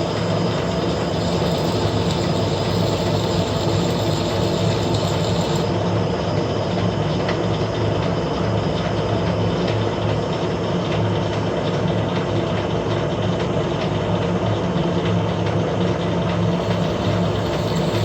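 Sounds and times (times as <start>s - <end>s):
metal lathe humming: 0.0s - 5.8s, 16.5s - 18.0s.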